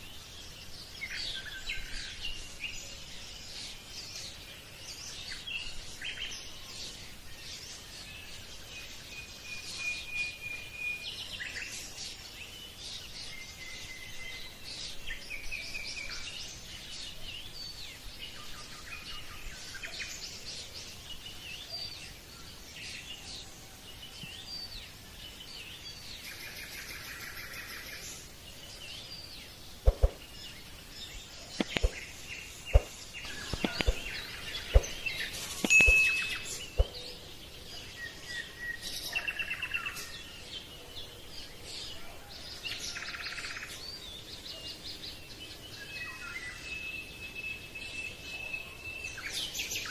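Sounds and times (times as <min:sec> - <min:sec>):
outdoor background noise: 0:00.0 - 0:49.9
birds chirping and whistling: 0:25.8 - 0:40.5
loud sharp clicks: 0:31.6 - 0:32.1.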